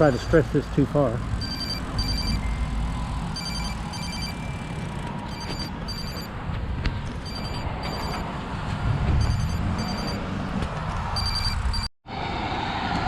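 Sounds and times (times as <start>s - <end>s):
road noise: 0.0s - 13.0s
short electronic beeps: 1.4s - 6.3s, 7.2s - 8.3s, 9.2s - 10.2s, 11.2s - 11.9s.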